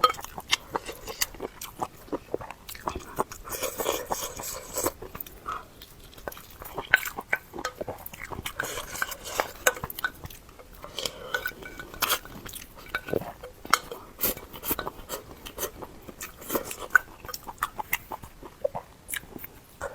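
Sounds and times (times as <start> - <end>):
chewing and biting food: 0.0 - 19.9.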